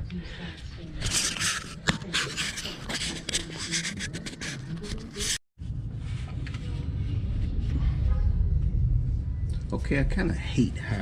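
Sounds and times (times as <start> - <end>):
scraping and rubbing: 1.0 - 8.4
low steady rumble: 5.6 - 11.0.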